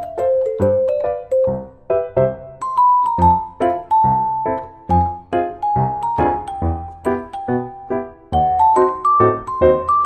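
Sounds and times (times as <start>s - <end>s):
music with struck notes: 2.6s - 10.0s.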